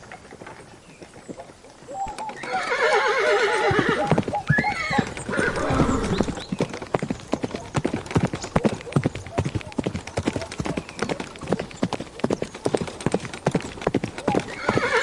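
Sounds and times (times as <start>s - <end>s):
animal warbling call: 5.3s - 6.4s.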